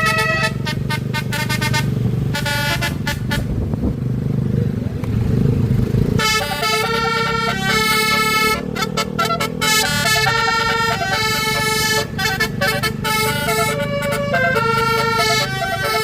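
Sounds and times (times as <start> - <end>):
multi-tone air horn playing a tune: 0.0 - 3.6, 6.2 - 16.0
low engine drone: 0.0 - 16.0.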